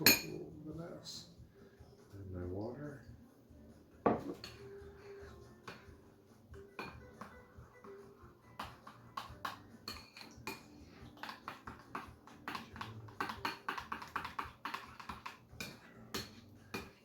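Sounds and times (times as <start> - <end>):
utensil clinking against bowl: 0.0 - 0.4, 6.6 - 8.0, 8.6 - 17.0.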